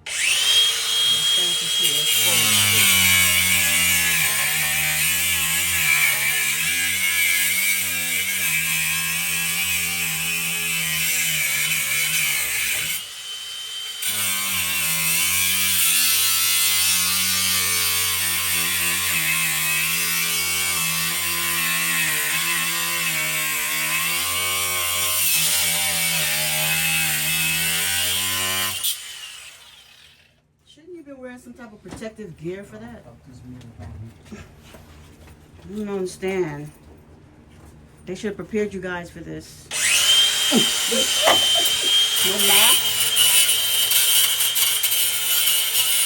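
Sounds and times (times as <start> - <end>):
power tool motor whine: 0.0 - 3.7, 39.7 - 46.0.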